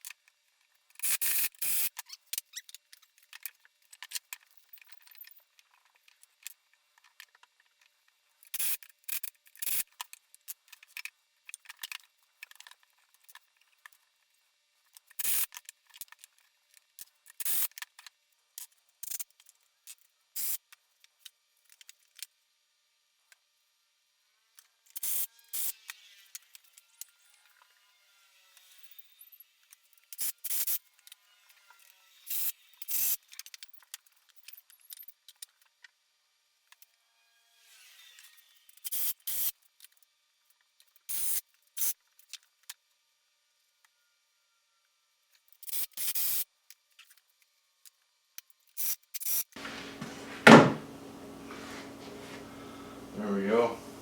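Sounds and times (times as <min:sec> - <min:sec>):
wood and hardware clicking: 0:49.6 - 0:52.5.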